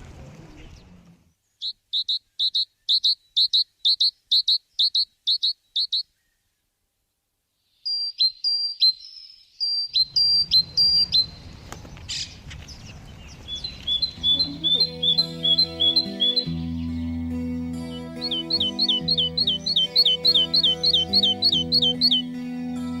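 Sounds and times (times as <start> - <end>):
small songbird singing: 0.7 - 6.6, 7.6 - 17.2, 17.8 - 22.4.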